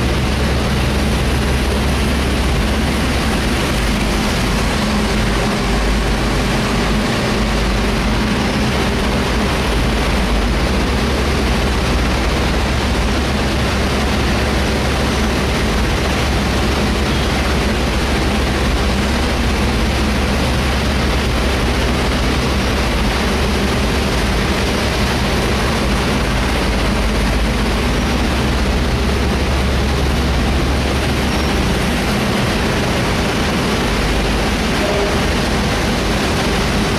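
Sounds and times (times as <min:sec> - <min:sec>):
industrial fan air rushing: 0:00.0 - 0:36.9
low fan hum: 0:00.0 - 0:36.9.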